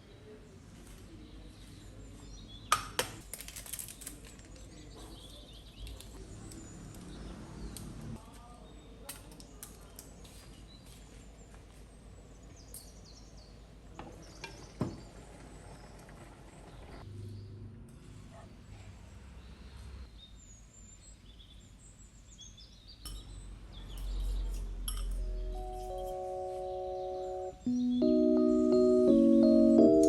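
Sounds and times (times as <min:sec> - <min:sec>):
birds chirping: 0:19.4 - 0:30.0
kitchenware clinks and knocks: 0:23.1 - 0:25.3.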